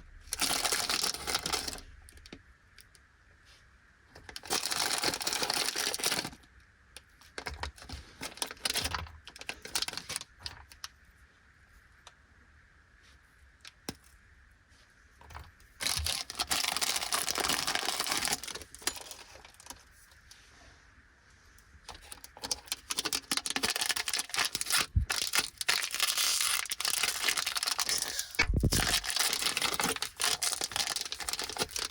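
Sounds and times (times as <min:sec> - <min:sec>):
plastic wrappers crinkling and tearing: 0:00.3 - 0:02.3, 0:04.2 - 0:06.4, 0:07.3 - 0:10.9, 0:15.8 - 0:19.8, 0:21.9 - 0:31.9.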